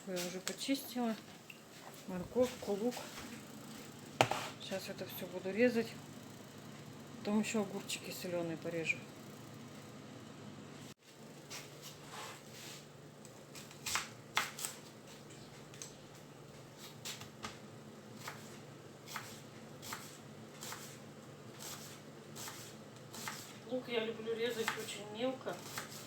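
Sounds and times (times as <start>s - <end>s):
knife cutting on cutting board: 4.2s - 4.6s, 19.1s - 21.0s, 21.6s - 23.6s.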